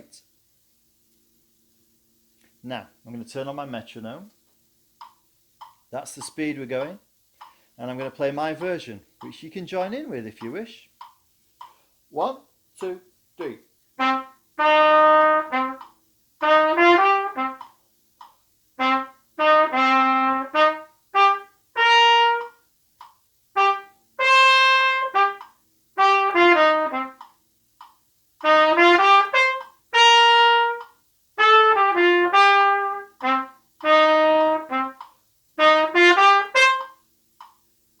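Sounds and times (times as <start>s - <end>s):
plastic trumpet playing jazz: 12.2s - 17.8s, 18.7s - 22.7s, 23.5s - 27.3s, 28.4s - 37.1s.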